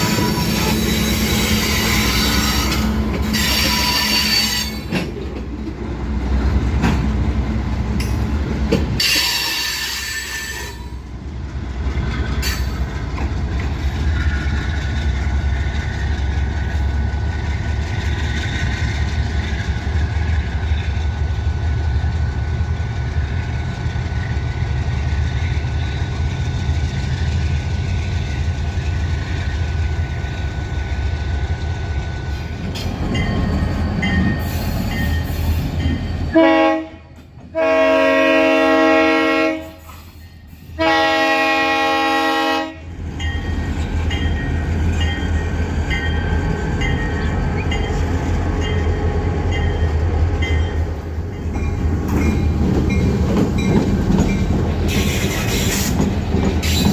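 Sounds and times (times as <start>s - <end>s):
locomotive air horn: 0.0s - 4.8s, 36.3s - 40.0s, 40.7s - 42.9s
train wheels clicking on rail joints: 0.0s - 36.4s, 43.0s - 56.9s
diesel locomotive running: 0.0s - 56.9s.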